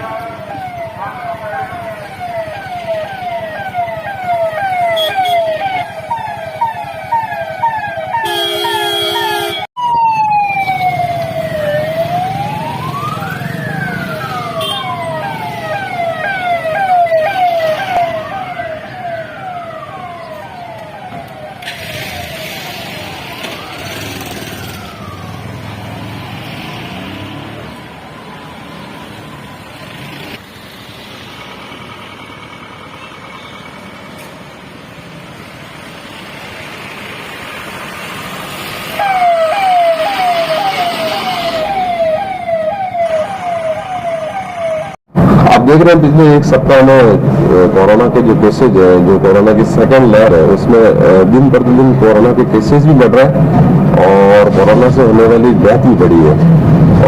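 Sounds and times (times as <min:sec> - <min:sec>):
police siren yelp: 0:00.0 - 0:29.9, 0:38.8 - 0:57.0
siren wail: 0:00.0 - 0:30.1, 0:37.8 - 0:57.0
traffic noise: 0:00.0 - 0:57.0
vehicle horn note: 0:08.2 - 0:09.7.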